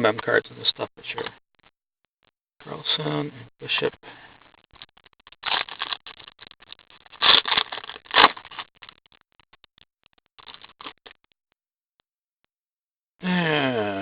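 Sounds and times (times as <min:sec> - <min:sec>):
trading cards rustling: 0:04.4 - 0:09.6.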